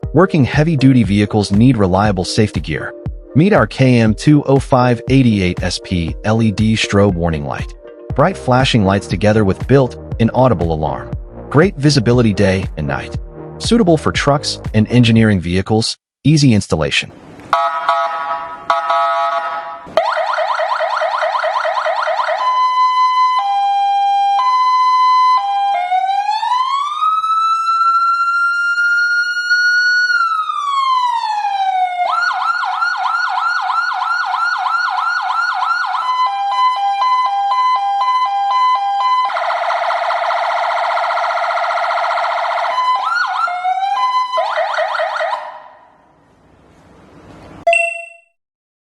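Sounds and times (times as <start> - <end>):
electronic alarm siren tones: 17.6 - 45.8.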